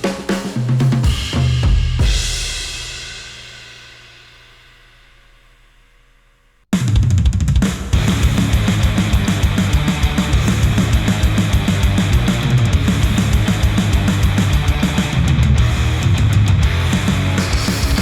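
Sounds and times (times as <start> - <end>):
rapid bass drum strokes: 0.0 - 18.0
heavy metal music: 8.0 - 18.0.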